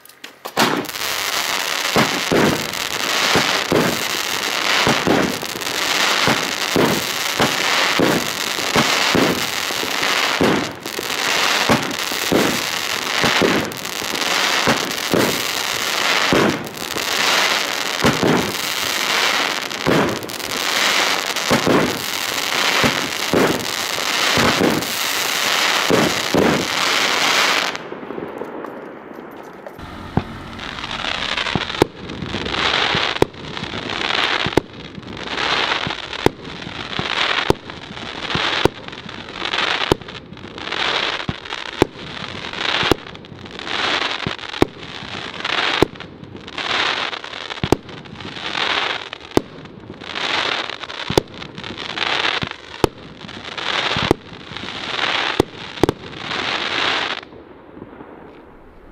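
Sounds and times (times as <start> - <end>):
firework shots with crackling: 0.0 - 58.9
firework bangs: 0.4 - 29.0, 29.6 - 40.0, 57.7 - 58.9
crackling star bursts: 29.8 - 37.6.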